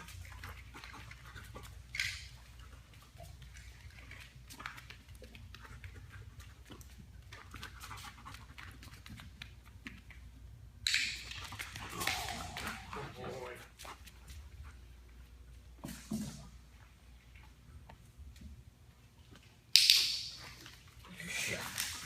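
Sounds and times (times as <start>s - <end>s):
dog panting: 0.0s - 9.4s.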